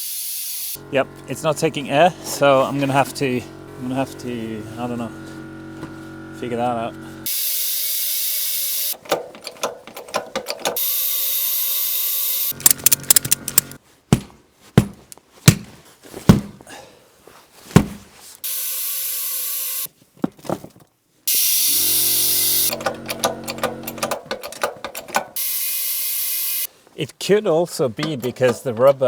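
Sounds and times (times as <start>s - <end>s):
compressed air hissing: 0.0s - 1.0s, 21.3s - 23.2s, 25.0s - 26.7s
ratchet strap clicking: 8.9s - 13.8s, 21.3s - 26.7s, 28.0s - 29.0s.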